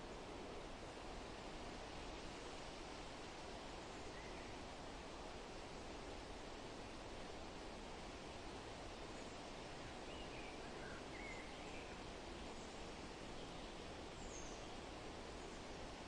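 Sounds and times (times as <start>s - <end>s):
wind rustling leaves: 0.0s - 16.0s
faint bird chirps: 3.9s - 4.6s, 10.0s - 12.8s, 13.4s - 14.8s.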